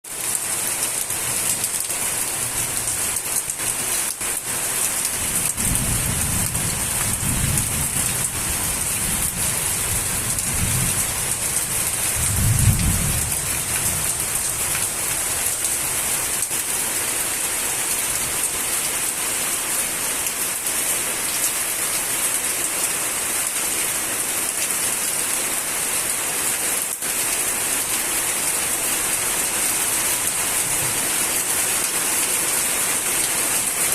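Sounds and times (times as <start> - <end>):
heavy rainfall hissing: 0.1 - 33.9
distant thunder rumbling: 5.5 - 14.9.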